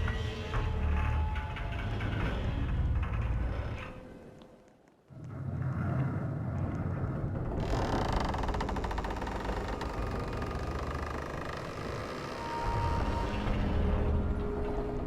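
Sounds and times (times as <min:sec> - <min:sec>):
low rumbling and creaking: 0:00.0 - 0:04.4, 0:05.1 - 0:15.0
rapid rattling creak: 0:07.4 - 0:14.6.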